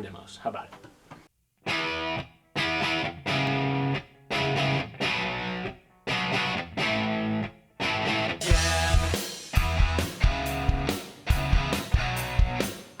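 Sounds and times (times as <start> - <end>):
distorted electric guitar chord stabs: 8.0 - 12.8.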